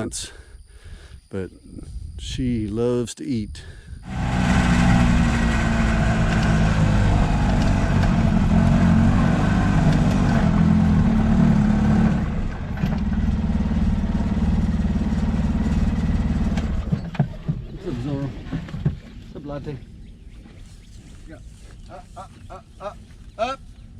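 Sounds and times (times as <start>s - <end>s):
vehicle engine running: 4.0s - 17.5s.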